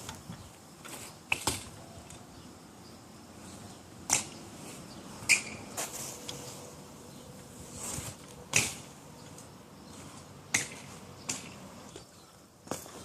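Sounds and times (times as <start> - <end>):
bike clacks and knocks: 0.8 - 2.2, 4.1 - 4.4, 10.5 - 13.0
bike being ridden: 3.3 - 13.0.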